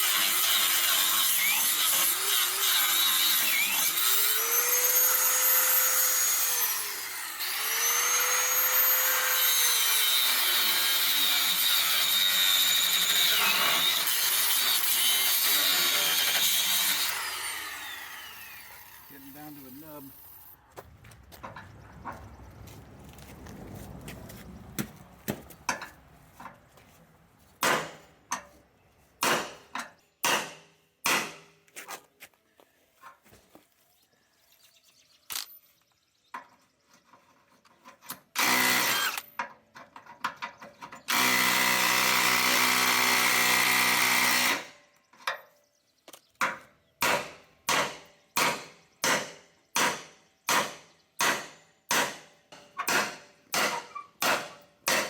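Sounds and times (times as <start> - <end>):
power tool running: 0.0 - 20.6, 38.4 - 39.2, 41.1 - 44.7.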